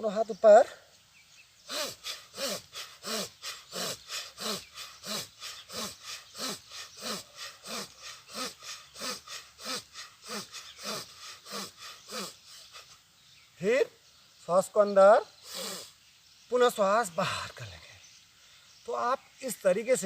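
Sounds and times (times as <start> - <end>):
rapid forceful breathing: 1.6 - 13.0, 15.4 - 16.0.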